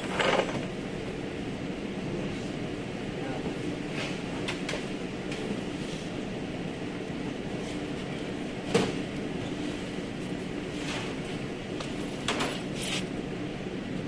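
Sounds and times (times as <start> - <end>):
steady mechanical hum: 0.0 - 14.0.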